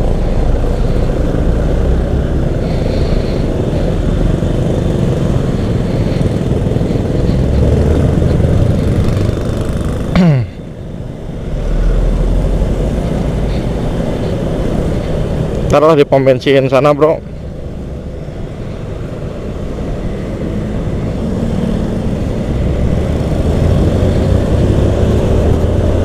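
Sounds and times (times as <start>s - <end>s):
motorcycle engine running: 0.0s - 11.4s.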